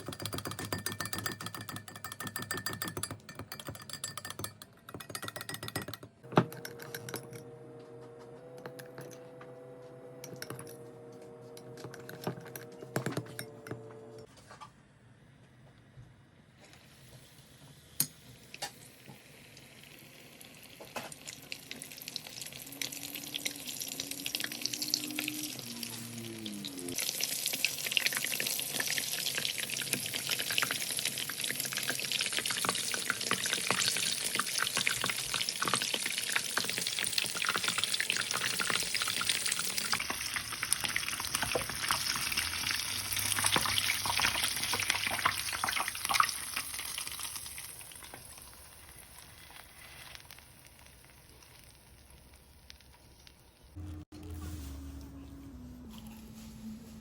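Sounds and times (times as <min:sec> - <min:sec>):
food frying in hot oil: 0:17.0 - 0:53.8.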